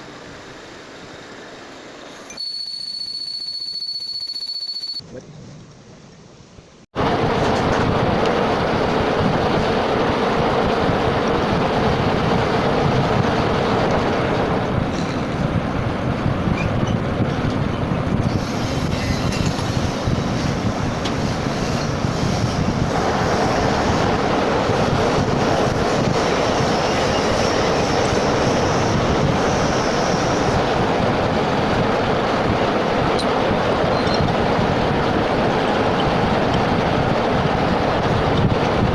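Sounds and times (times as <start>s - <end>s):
machine tool cutting steel: 18.3s - 30.8s.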